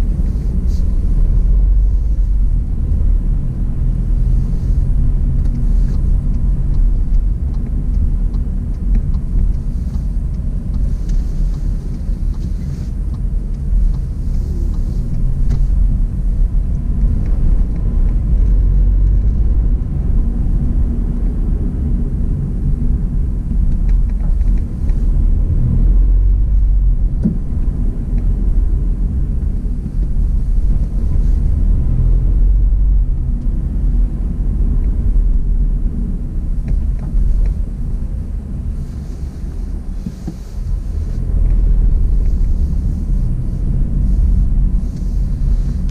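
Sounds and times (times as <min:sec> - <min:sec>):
car engine and tyre rumble: 0:00.0 - 0:45.9.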